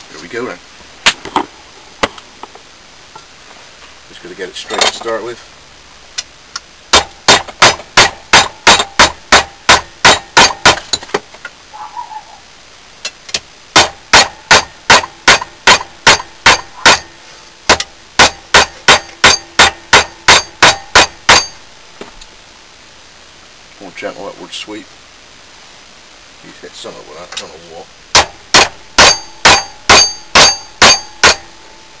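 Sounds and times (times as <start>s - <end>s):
hammer striking metal blade: 7.0s - 10.8s, 13.8s - 17.1s, 17.7s - 21.6s, 28.2s - 31.5s.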